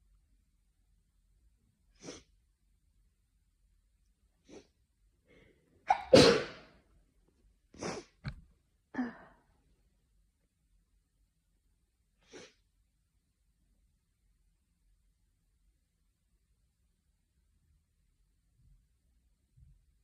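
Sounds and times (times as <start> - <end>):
person sneezing: 5.9 - 6.7, 7.8 - 8.2, 12.2 - 12.6.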